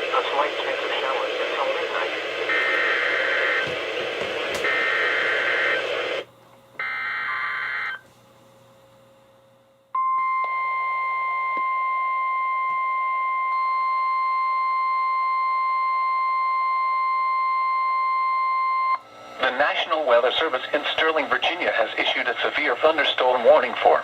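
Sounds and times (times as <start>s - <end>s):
radio static: 0.0s - 6.3s, 19.4s - 24.0s
steady warning alarm tone: 1.6s - 6.2s, 6.8s - 8.0s, 10.0s - 24.0s.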